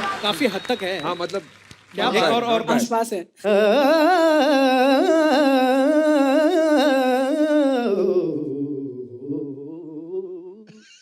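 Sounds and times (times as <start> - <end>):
man singing wavering vocal line: 3.4 - 10.8.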